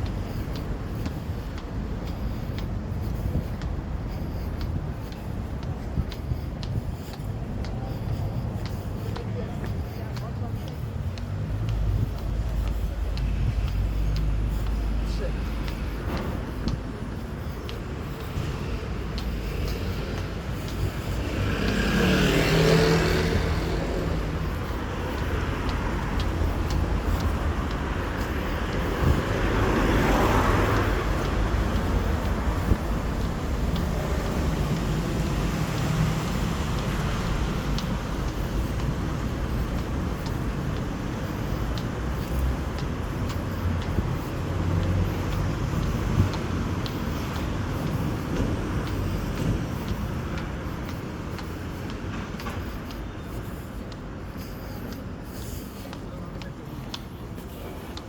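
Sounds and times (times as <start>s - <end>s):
traffic rumble: 0.0s - 58.0s
vehicles passing: 0.0s - 58.0s.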